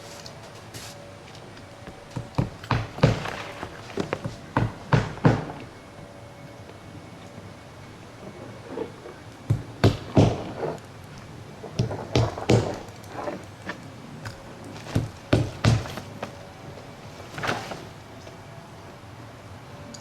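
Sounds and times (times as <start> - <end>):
hammer knocks and thuds on roof: 1.8 - 5.8, 9.5 - 10.8, 11.7 - 16.4.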